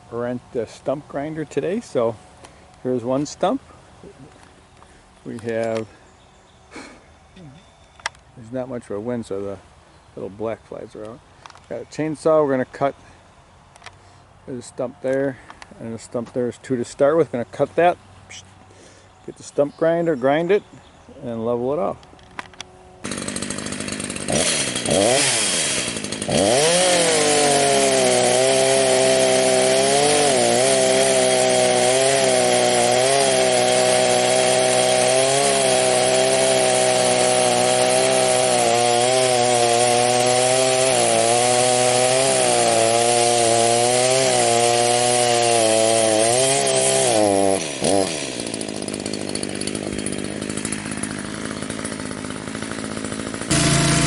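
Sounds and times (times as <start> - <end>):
chainsaw cutting at full throttle: 6.7 - 7.6, 23.0 - 54.0
chainsaw idling: 23.0 - 54.0.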